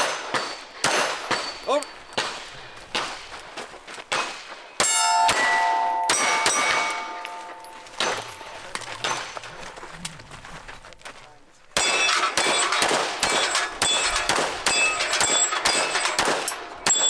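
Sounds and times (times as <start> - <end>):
steel plates clanging and ringing: 0.0 - 2.5, 4.7 - 9.5, 11.8 - 17.0
pistol shots: 0.0 - 3.4, 4.1 - 9.4, 11.8 - 17.0.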